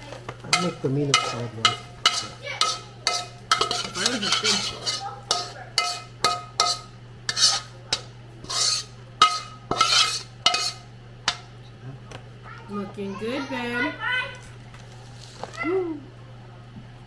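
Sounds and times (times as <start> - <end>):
metal utensil scraping pan: 0.0 - 11.5.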